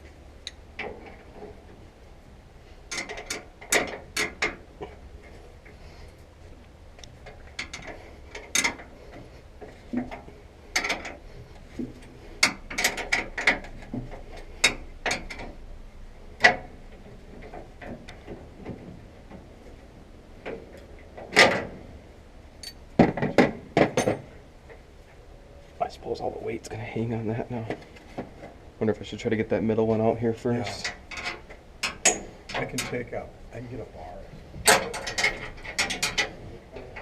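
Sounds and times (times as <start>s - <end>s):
metal tools clanking on steel: 7.2s - 9.2s, 9.9s - 15.6s, 22.6s - 22.8s, 23.8s - 24.4s, 30.6s - 33.1s, 34.6s - 37.0s.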